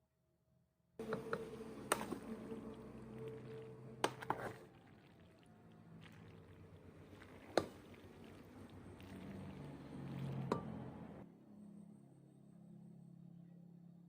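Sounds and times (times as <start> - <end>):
soft wet mixing: 1.0 - 11.2.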